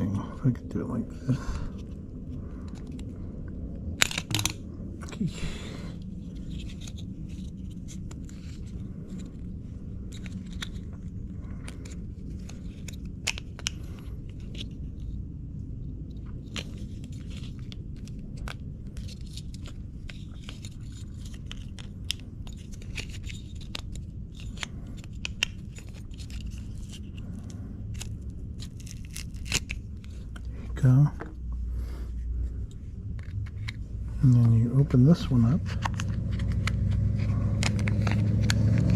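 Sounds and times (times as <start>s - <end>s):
steady low hum: 0.0s - 38.9s
plastic parts clicking and snapping: 4.0s - 5.2s, 10.1s - 14.7s, 16.5s - 30.5s, 35.7s - 38.9s.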